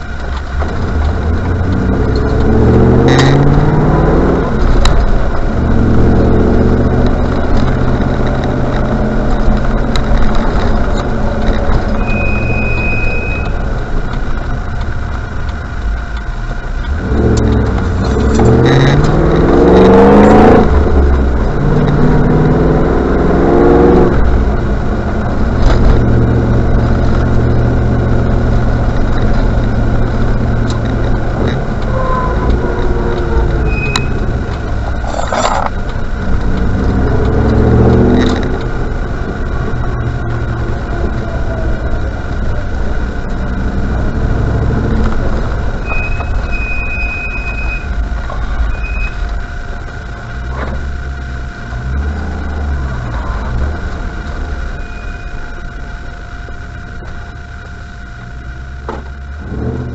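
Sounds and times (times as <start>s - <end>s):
car engine accelerating: 0.0s - 59.9s
road noise: 0.0s - 59.9s
brake squeal: 6.6s - 14.3s, 29.1s - 38.4s, 39.8s - 49.4s, 50.1s - 58.5s.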